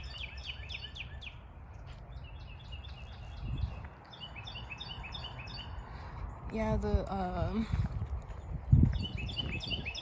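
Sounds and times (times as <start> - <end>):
low wind rumble: 0.0 - 10.0
small birds chirping: 0.0 - 10.0.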